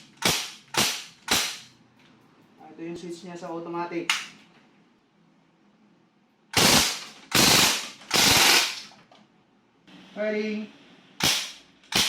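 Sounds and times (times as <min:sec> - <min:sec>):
airsoft gun automatic bursts: 0:06.6 - 0:08.8, 0:11.2 - 0:12.0.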